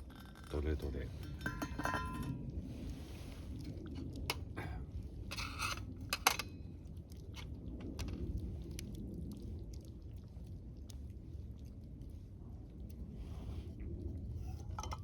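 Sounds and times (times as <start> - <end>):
utensils scraping cookware: 1.2 - 2.4.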